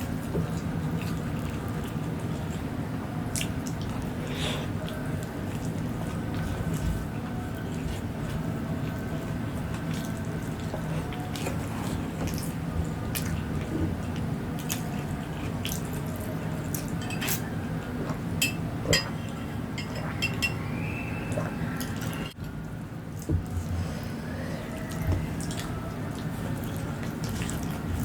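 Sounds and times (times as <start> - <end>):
wet chewing: 0.0 - 19.4, 24.2 - 28.0
steady low hum: 0.0 - 28.0.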